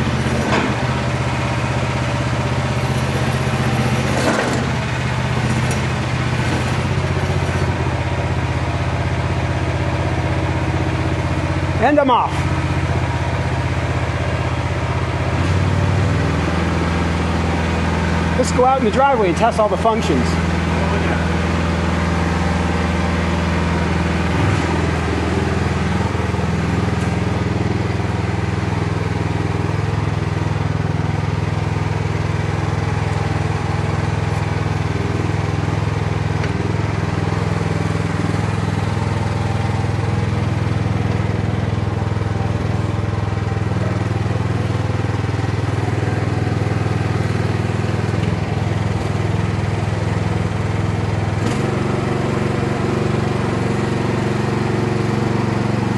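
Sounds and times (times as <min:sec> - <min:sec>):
small gasoline engine running: 0:00.0 - 0:55.9.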